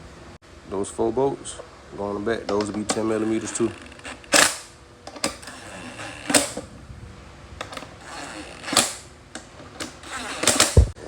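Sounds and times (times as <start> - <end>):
metal hardware clicking: 2.5 - 6.7, 7.6 - 10.9.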